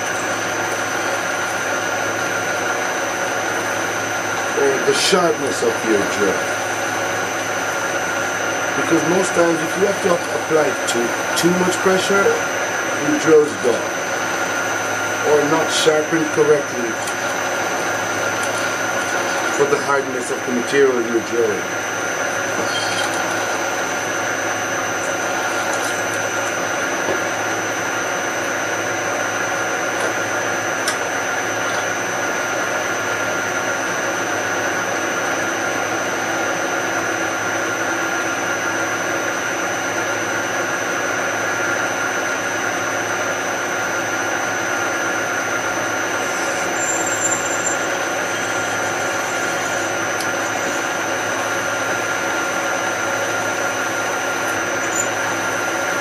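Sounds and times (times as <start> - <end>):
machine tool drilling metal: 15.2 - 27.0, 46.0 - 56.0.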